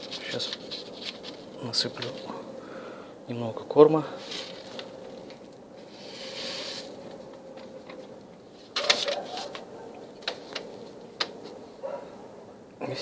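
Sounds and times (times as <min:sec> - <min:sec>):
grain pouring rustling hiss: 0:05.8 - 0:07.0.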